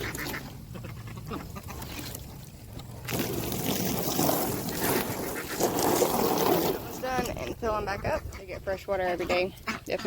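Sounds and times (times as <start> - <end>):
water splashing and running: 1.5 - 7.4.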